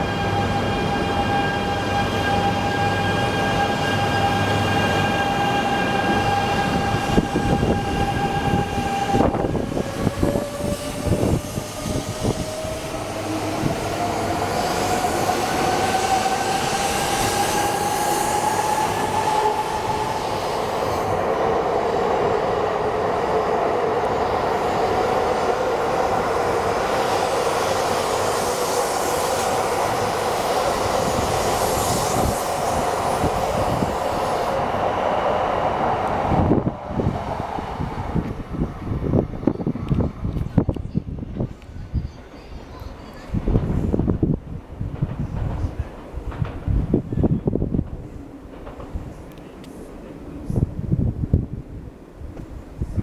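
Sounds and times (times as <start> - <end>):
train electric hum: 0.0 - 53.0.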